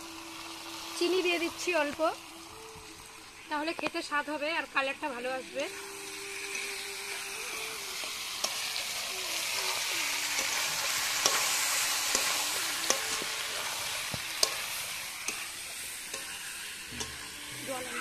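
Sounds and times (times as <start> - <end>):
food sizzling in a pan: 0.0 - 18.0
spatula clicking against pan: 8.4 - 8.6, 10.3 - 13.4, 14.1 - 15.5, 16.1 - 16.4.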